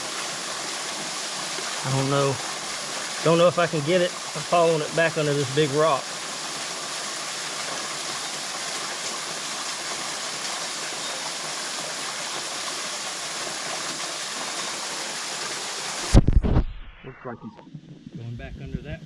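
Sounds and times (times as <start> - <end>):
creek water rushing: 0.0 - 16.2.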